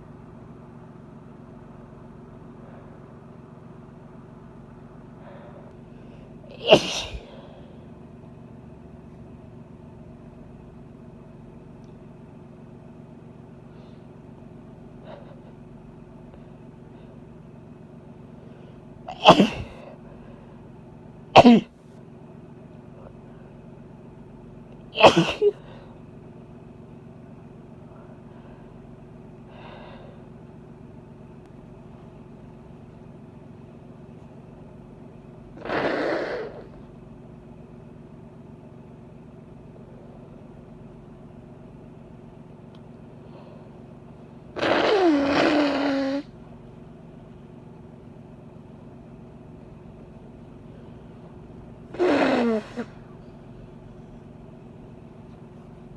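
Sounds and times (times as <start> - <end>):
low steady hum: 0.0 - 55.9
woman sneezing: 6.5 - 7.5, 19.1 - 19.9, 21.4 - 21.7, 25.0 - 25.6, 35.6 - 36.7, 44.6 - 46.3, 51.9 - 53.0
woman blowing her nose: 6.6 - 7.5, 35.6 - 36.8, 44.6 - 46.3, 51.9 - 53.0.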